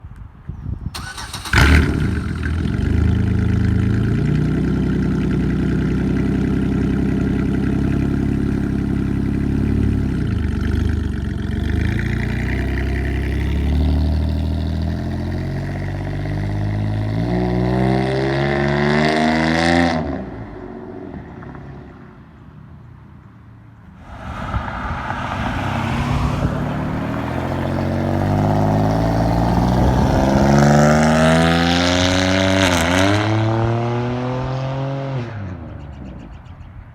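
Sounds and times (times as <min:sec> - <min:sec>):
loud car engine revving: 0:01.0 - 0:20.0, 0:24.0 - 0:35.2.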